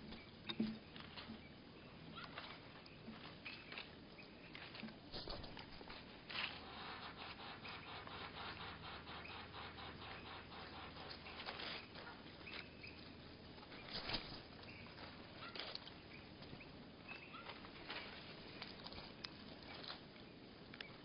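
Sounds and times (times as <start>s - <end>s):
bird chirps: 1.3s - 4.6s, 6.6s - 13.1s, 13.7s - 18.6s
soft bird wing flutters: 13.8s - 14.5s.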